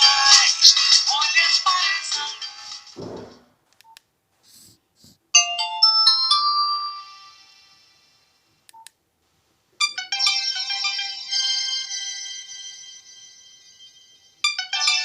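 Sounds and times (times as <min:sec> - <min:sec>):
phone ringtone melody: 0:05.4 - 0:07.9, 0:09.8 - 0:15.0.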